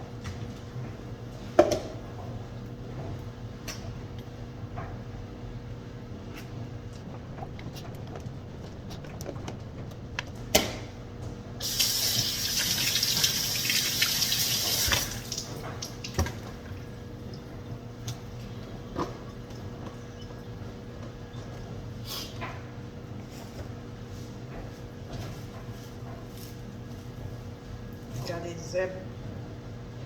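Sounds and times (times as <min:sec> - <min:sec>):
faucet running into sink: 0:11.6 - 0:16.3.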